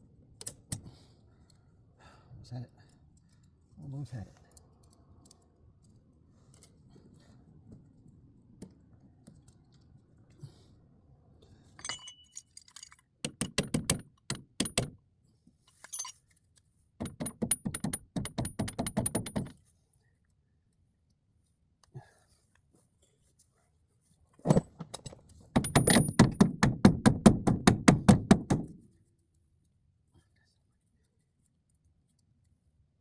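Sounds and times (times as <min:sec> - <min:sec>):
metal tools clinking: 0:11.8 - 0:13.1, 0:15.7 - 0:16.4, 0:24.4 - 0:26.2.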